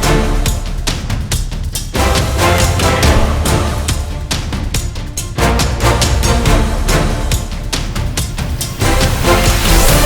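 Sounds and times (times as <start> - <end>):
background music with heavy bass: 0.0 - 10.0
sharp drum hits: 2.6 - 5.2.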